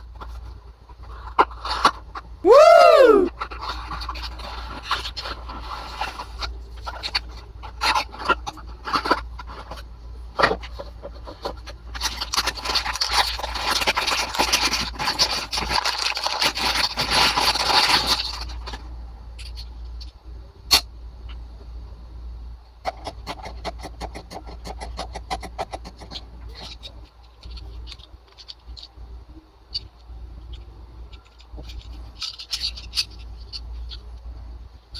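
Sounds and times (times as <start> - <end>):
packaging clicks and crinkles: 3.3 - 9.9, 10.6 - 19.7
rubbing scraping rustle: 3.3 - 9.9, 10.6 - 19.8.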